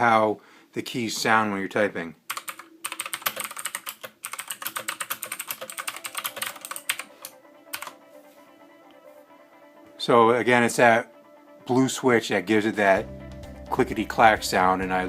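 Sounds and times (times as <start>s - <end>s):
clicky mechanical keyboard typing: 2.3s - 8.0s.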